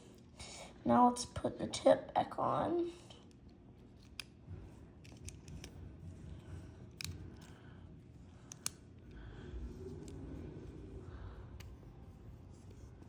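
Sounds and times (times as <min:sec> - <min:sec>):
stylus pen parts rubbing: 0:04.0 - 0:13.0
sharp plastic clicks: 0:08.4 - 0:08.8.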